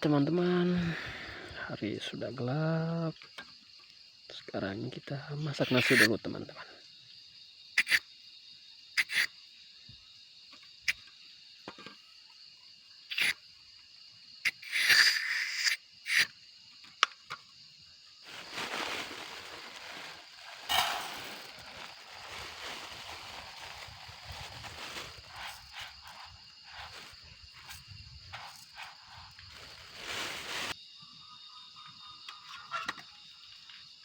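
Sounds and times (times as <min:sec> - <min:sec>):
night insects chorus: 0:00.0 - 0:34.0
rustling: 0:18.2 - 0:30.8.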